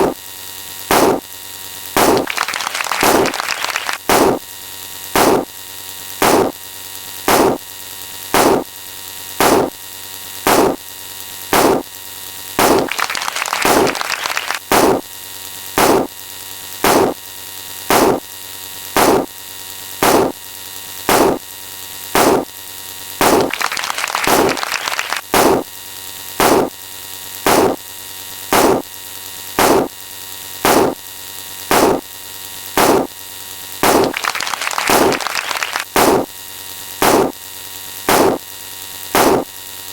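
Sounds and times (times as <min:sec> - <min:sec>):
steady hum: 0:00.0 - 0:00.2, 0:00.8 - 0:04.5, 0:05.1 - 0:05.5, 0:06.2 - 0:06.6, 0:07.2 - 0:07.6, 0:08.3 - 0:08.7, 0:09.3 - 0:09.8, 0:10.4 - 0:10.9, 0:11.5 - 0:11.9, 0:12.5 - 0:15.1, 0:15.8 - 0:16.1, 0:16.8 - 0:17.2, 0:17.9 - 0:18.3, 0:18.9 - 0:19.4, 0:20.0 - 0:20.4, 0:21.0 - 0:21.5, 0:22.1 - 0:22.5, 0:23.2 - 0:25.7, 0:26.4 - 0:26.8, 0:27.4 - 0:27.8, 0:28.5 - 0:28.9, 0:29.6 - 0:30.0, 0:30.6 - 0:36.4, 0:37.0 - 0:38.5, 0:39.1 - 0:39.6
short repeating sound effect: 0:00.9 - 0:01.3, 0:02.0 - 0:04.4, 0:05.2 - 0:05.5, 0:06.2 - 0:06.5, 0:07.3 - 0:07.6, 0:08.4 - 0:08.6, 0:09.4 - 0:09.8, 0:10.5 - 0:10.8, 0:11.6 - 0:11.8, 0:12.6 - 0:15.0, 0:15.8 - 0:16.1, 0:16.9 - 0:17.2, 0:17.9 - 0:18.2, 0:19.0 - 0:19.3, 0:20.0 - 0:20.4, 0:21.1 - 0:21.4, 0:22.2 - 0:22.5, 0:23.2 - 0:25.7, 0:26.4 - 0:26.7, 0:27.5 - 0:27.8, 0:28.5 - 0:28.8, 0:29.6 - 0:29.9, 0:30.7 - 0:31.0, 0:31.7 - 0:32.1, 0:32.8 - 0:33.1, 0:33.8 - 0:36.3, 0:37.0 - 0:37.4, 0:38.1 - 0:38.4, 0:39.2 - 0:39.5.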